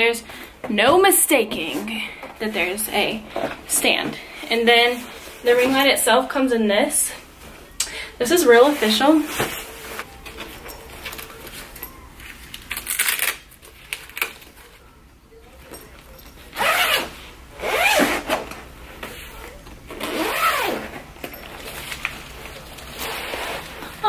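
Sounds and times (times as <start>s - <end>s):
packaging rustling and scraping: 8.4s - 14.8s, 15.8s - 24.0s.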